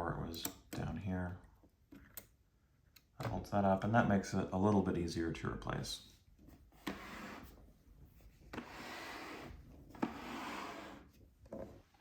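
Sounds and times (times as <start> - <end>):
rubbing and scraping on typewriter: 6.8 - 7.6, 8.5 - 11.1.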